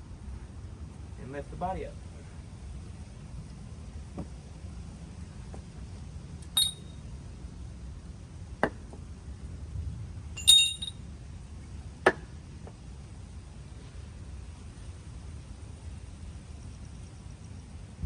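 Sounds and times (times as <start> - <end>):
metallic clinks and knocks: 6.6 - 6.9, 10.4 - 11.0.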